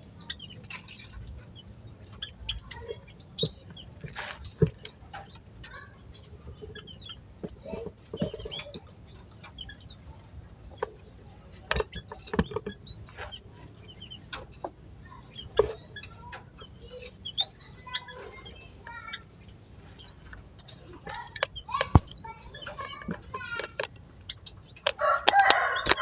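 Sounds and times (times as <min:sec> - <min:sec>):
birds chirping: 0:00.0 - 0:26.0
low clucking calls: 0:00.0 - 0:26.0
sharp knocks: 0:21.1 - 0:22.2.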